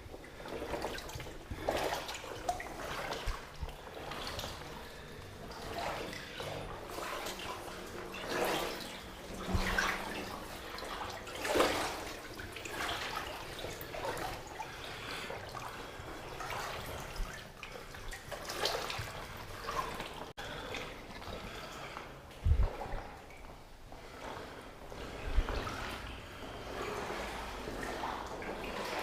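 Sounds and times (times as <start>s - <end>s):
feet wading through water: 0.0s - 29.0s.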